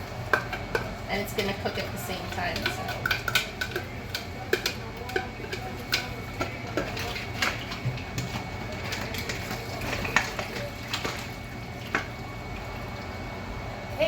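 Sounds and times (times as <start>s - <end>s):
exhaust fan humming: 0.0s - 14.0s
mussel shells clinking in a pot: 0.3s - 12.1s.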